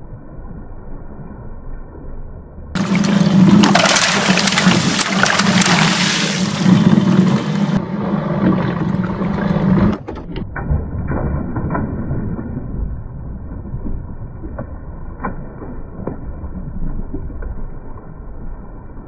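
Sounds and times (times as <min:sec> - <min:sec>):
rushing water crackling: 0:02.8 - 0:10.1.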